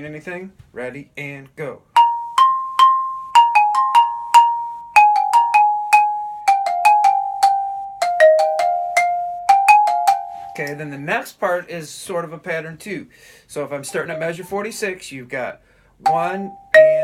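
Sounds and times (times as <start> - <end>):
xylophone played with mallets: 2.0 - 10.9, 13.9 - 14.5, 16.0 - 17.0.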